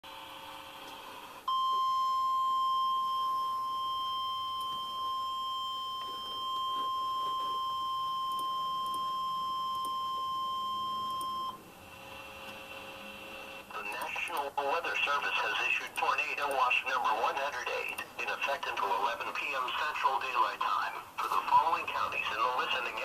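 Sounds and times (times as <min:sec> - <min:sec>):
steady alarm tone: 0:01.5 - 0:11.6.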